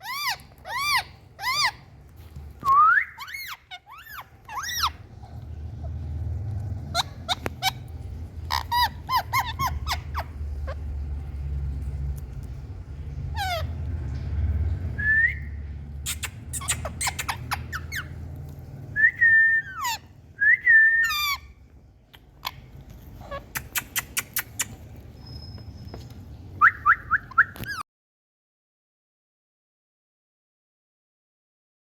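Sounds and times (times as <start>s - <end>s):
parrot squawking and whistling: 0.0s - 1.9s, 2.6s - 6.2s, 6.8s - 11.1s, 13.2s - 13.9s, 14.9s - 27.8s
low rumble: 4.5s - 23.3s.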